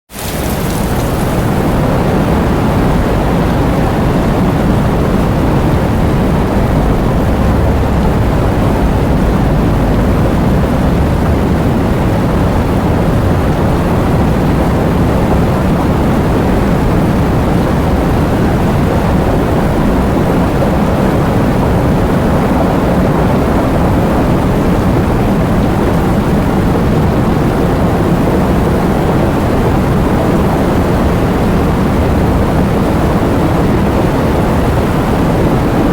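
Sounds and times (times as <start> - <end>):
heavy rain falling: 0.1 - 35.9.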